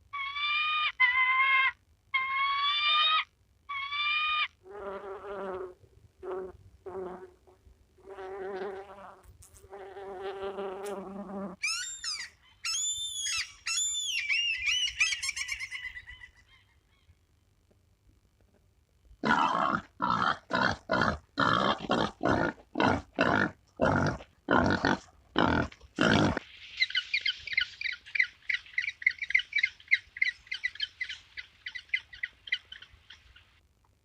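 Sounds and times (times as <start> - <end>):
harsh animal calls: 19.2 - 32.7.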